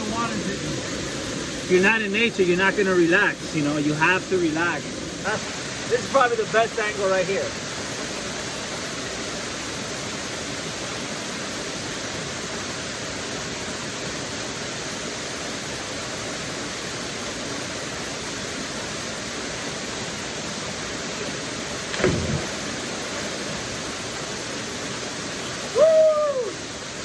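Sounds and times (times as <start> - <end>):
waterfall pouring into a pool: 0.0 - 27.0
person splashing into water: 21.9 - 23.5.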